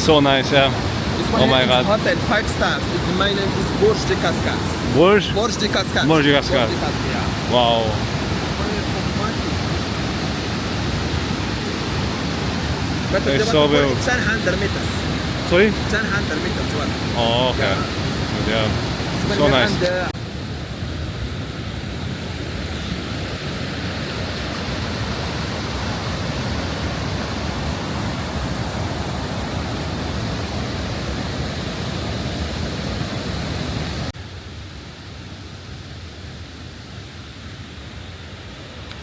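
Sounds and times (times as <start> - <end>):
steady hiss: 0.0 - 20.1
waterfall roaring: 0.0 - 34.1.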